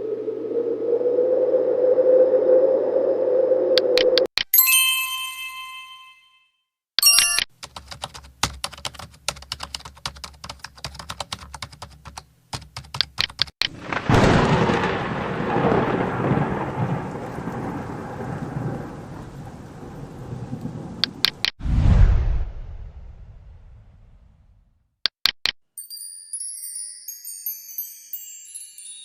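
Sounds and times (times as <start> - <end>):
bell-like ding: 4.6 - 7.4
sharp clicking: 12.6 - 13.7, 21.0 - 21.6, 25.0 - 25.6
thunderclap rumbling: 13.7 - 24.6.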